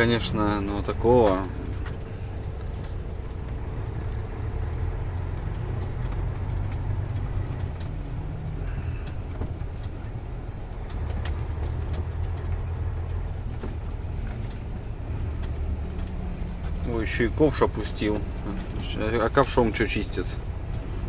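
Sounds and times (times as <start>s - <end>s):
road noise inside cab: 0.0s - 21.0s
truck diesel engine running: 0.0s - 21.0s
small knocks and rattles: 0.8s - 16.9s.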